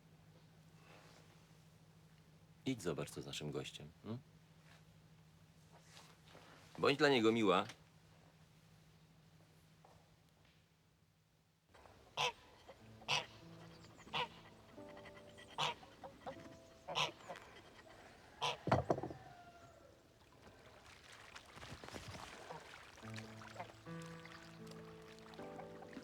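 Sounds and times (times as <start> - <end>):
fowl honking: 12.2 - 19.6
quiet music: 12.8 - 17.9, 23.0 - 26.0.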